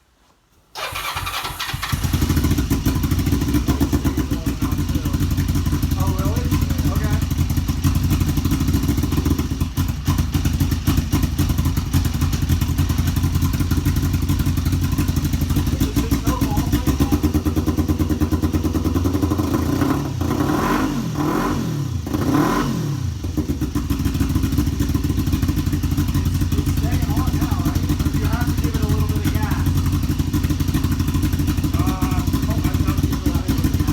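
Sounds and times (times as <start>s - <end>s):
motorcycle engine revving: 0.8s - 33.9s
motorcycle engine rough idle: 0.8s - 33.9s.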